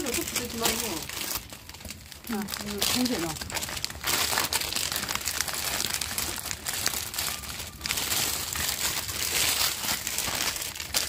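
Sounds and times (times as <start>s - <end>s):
firewood crackling and popping: 0.0s - 11.0s.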